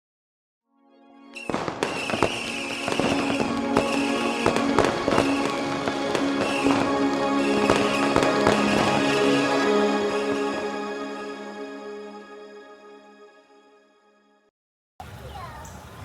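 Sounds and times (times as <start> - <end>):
music with held tones: 0.7 - 14.5
fireworks pops and crackles: 1.4 - 9.2.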